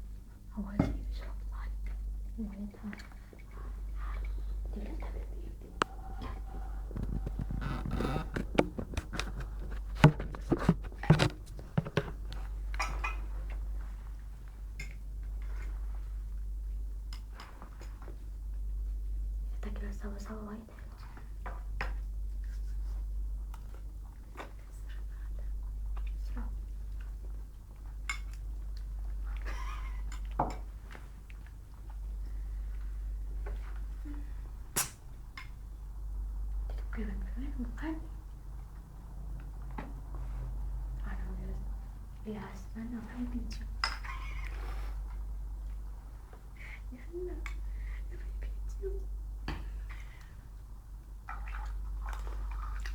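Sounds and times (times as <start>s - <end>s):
low steady hum: 0.0s - 52.9s
clicks taps and knocks: 5.7s - 13.2s.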